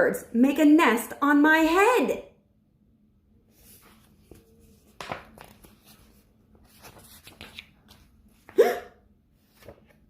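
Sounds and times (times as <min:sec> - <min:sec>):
paper pages rustling: 0:03.5 - 0:08.6, 0:09.4 - 0:10.0.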